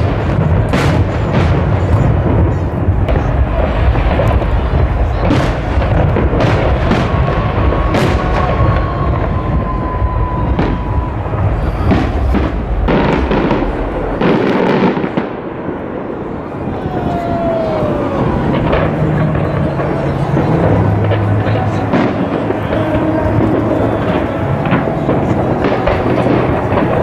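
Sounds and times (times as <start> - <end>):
fireworks bangs and crackles: 0.0 - 27.0
low rumble: 0.0 - 27.0
firework whistle: 5.3 - 15.3.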